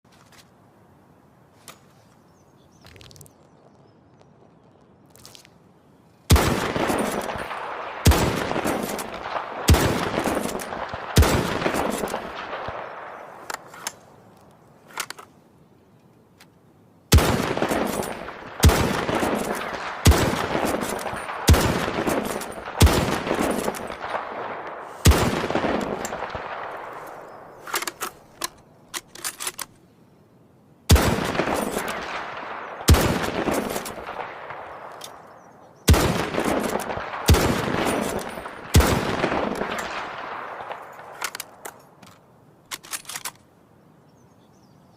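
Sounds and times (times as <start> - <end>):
rifle shots echoing: 6.3 - 13.8, 17.1 - 28.8, 30.9 - 42.0.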